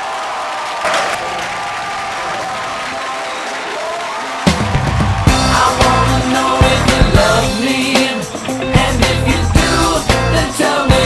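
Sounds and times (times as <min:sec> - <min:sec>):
steady drum beat: 0:04.4 - 0:11.0
pop-rock song: 0:05.2 - 0:11.0
person singing: 0:05.3 - 0:11.0.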